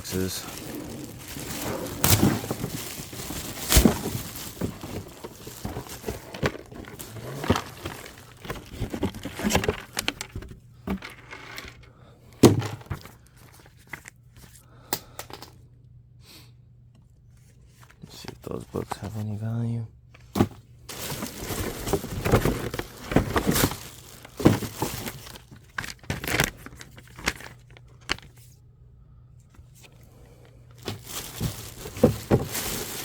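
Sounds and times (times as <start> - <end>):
boxes knocking and clattering: 0.0 - 11.2, 12.4 - 13.2, 20.4 - 27.4, 30.8 - 33.0.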